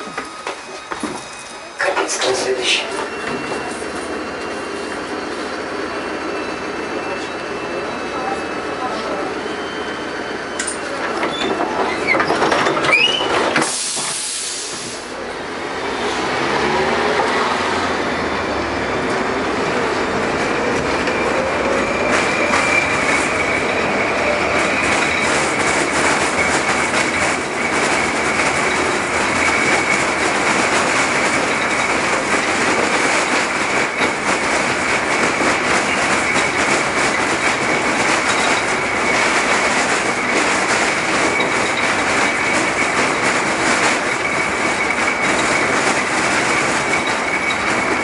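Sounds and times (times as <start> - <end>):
high wheel squeal: 0.0 - 14.9, 16.1 - 48.0
tram motor whine: 0.0 - 48.0
wheels clacking over rail joints: 10.6 - 14.2, 22.0 - 48.0.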